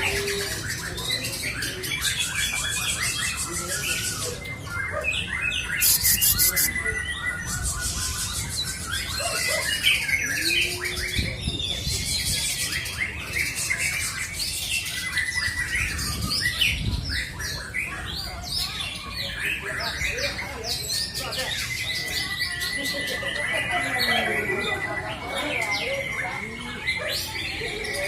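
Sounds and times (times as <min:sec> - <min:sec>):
bird squawking and chirping: 0:05.6 - 0:07.0.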